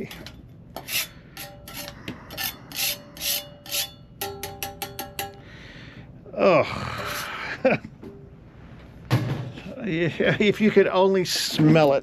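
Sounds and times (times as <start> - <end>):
scraping grime off metal: 0.0 - 5.3, 7.0 - 7.4
light metallic ringing: 0.0 - 5.6.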